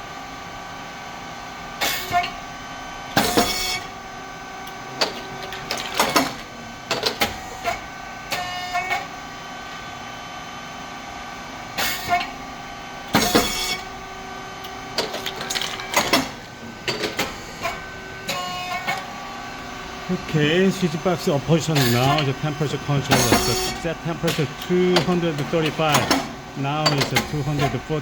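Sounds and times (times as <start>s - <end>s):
machine hum: 0.0s - 28.0s
rice cake machine bursts: 11.7s - 28.0s.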